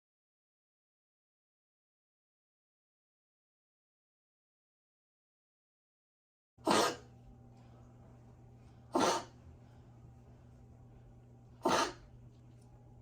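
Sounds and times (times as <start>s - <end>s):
dog coughing harshly: 6.6s - 7.1s, 8.9s - 9.4s, 11.6s - 12.1s.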